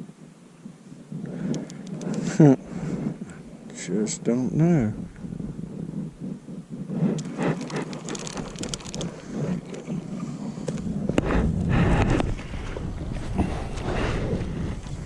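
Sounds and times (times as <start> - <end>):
low rumble: 4.5 - 7.2, 9.0 - 15.0
handling rustles and knocks: 6.6 - 11.3.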